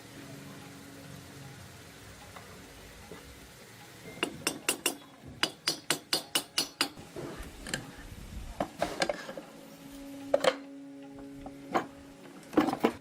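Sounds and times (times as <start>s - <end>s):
hand tools tapping metal: 2.2s - 7.0s, 8.6s - 13.0s.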